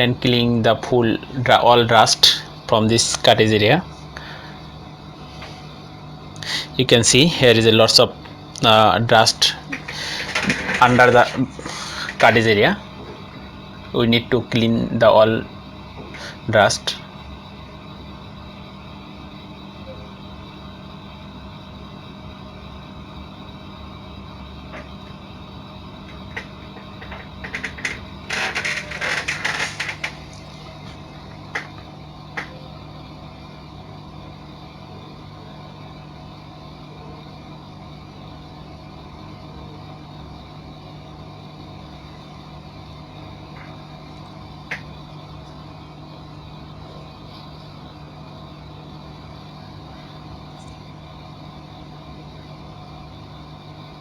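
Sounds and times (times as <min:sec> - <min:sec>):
low machine hum: 0:00.0 - 0:54.0
rattling hissing noise: 0:05.2 - 0:05.8, 0:06.4 - 0:17.2, 0:24.7 - 0:32.7
plastic printer parts clicking: 0:09.6 - 0:12.5, 0:26.1 - 0:31.0.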